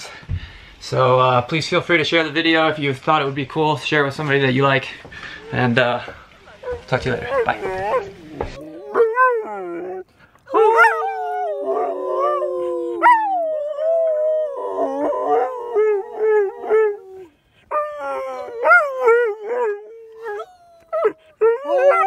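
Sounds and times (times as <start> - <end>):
dogs howling: 6.6 - 22.0
dogs yelping: 6.6 - 22.0.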